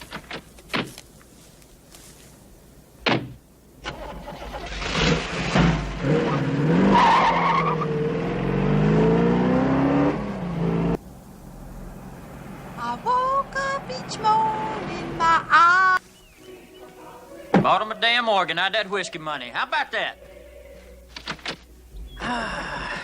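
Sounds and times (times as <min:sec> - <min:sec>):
car engine accelerating: 0:03.9 - 0:15.6.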